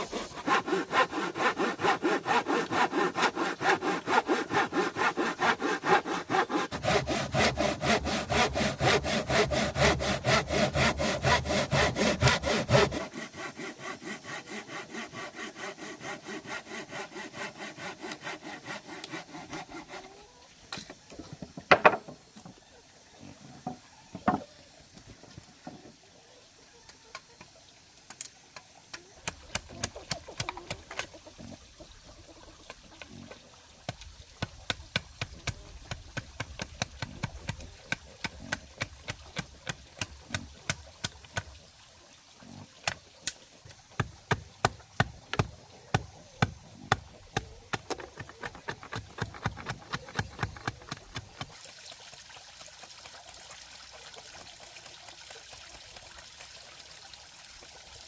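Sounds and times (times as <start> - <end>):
water trickling: 27.4 - 48.4, 49.0 - 58.0.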